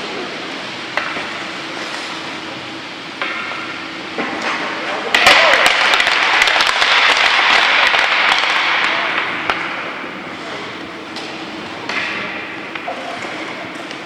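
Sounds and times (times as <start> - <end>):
sticks and puck clacking: 0.9 - 2.1, 4.2 - 10.6, 11.2 - 14.0.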